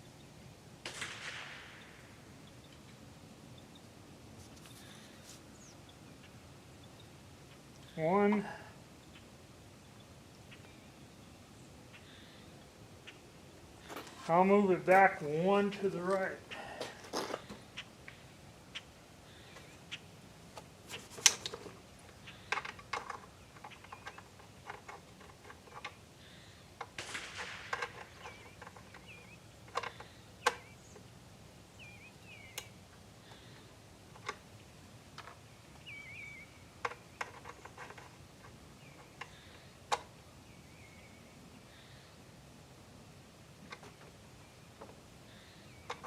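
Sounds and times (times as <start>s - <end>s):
light clicks and knocks of handling: 13.8s - 31.1s, 32.5s - 40.3s, 43.6s - 46.0s
faint bird chirps: 28.0s - 31.0s, 31.7s - 33.7s, 35.6s - 37.6s.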